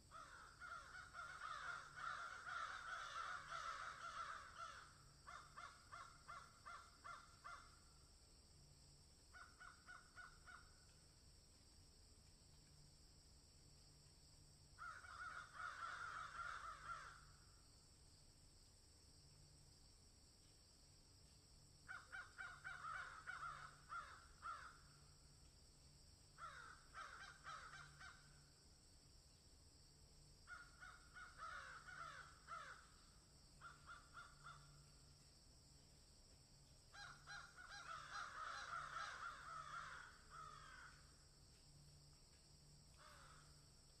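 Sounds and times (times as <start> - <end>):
crow cawing: 0.1 - 7.9, 9.3 - 11.0, 14.8 - 17.5, 21.8 - 25.1, 26.4 - 28.5, 30.5 - 34.9, 36.9 - 41.2, 42.9 - 43.6.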